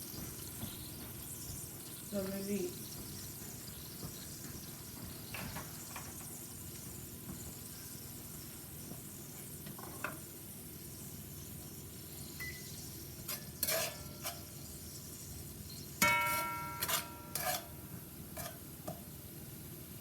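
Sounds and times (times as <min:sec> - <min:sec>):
faint sizzle in hot oil: 0:00.0 - 0:20.0
spoon stirring in metal pot: 0:12.4 - 0:19.1
pot clanging: 0:13.3 - 0:14.5, 0:16.0 - 0:19.0.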